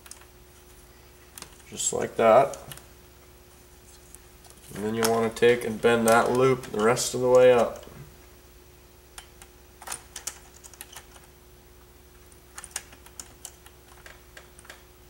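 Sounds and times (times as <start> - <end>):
faint steady hum: 0.0 - 15.0
wire bending clicks: 1.3 - 2.9, 4.4 - 8.0, 12.5 - 14.9.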